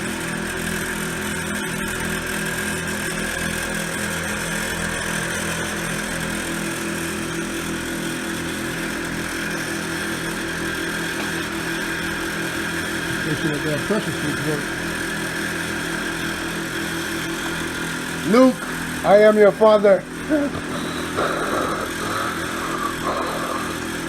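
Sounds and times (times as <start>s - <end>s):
air compressor pulsing hum: 0.0s - 24.0s.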